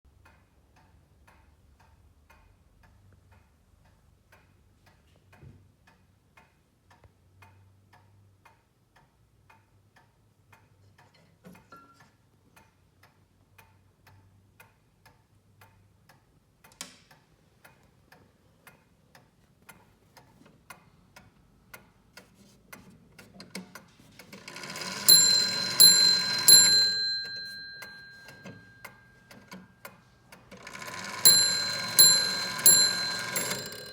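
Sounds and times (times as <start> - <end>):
clock ticking: 24.2 - 33.9
clock bell strikes: 24.4 - 28.9, 30.6 - 33.9.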